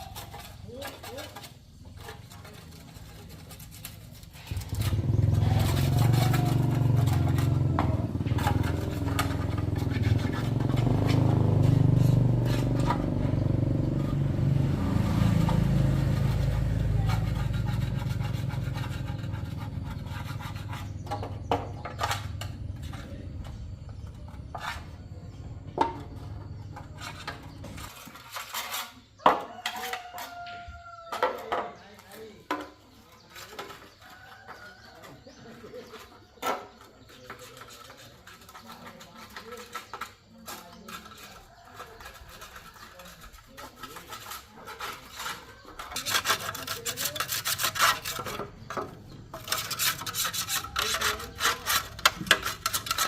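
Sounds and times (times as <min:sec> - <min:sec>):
small motorcycle engine running: 0:00.1 - 0:27.9.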